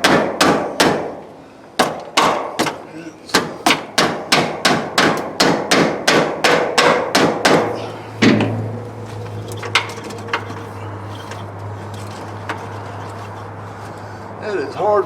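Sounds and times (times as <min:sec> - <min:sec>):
rapid hammer strikes ringing: 0:01.8 - 0:08.8
steady low hum: 0:07.0 - 0:14.8
heavy thump: 0:07.2 - 0:10.6.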